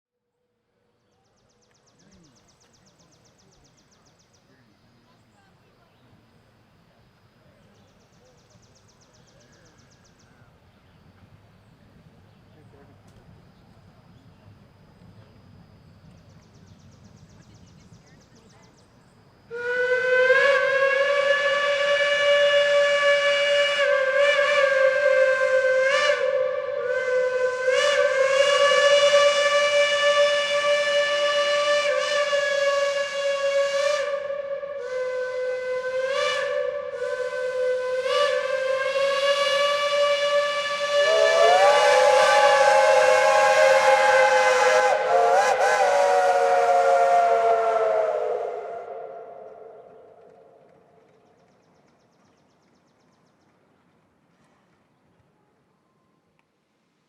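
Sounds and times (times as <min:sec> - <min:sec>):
steam locomotive whistle blasts: 0:19.2 - 0:50.6.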